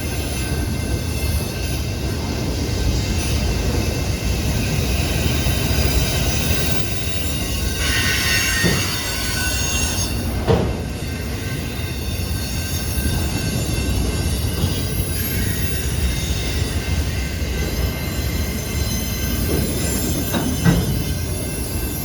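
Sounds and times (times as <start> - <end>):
train wheels rumbling on rail: 0.0 - 22.0.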